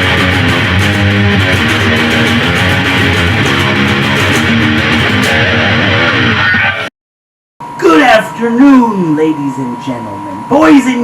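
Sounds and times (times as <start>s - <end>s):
guitar-driven rock music: 0.0s - 6.9s.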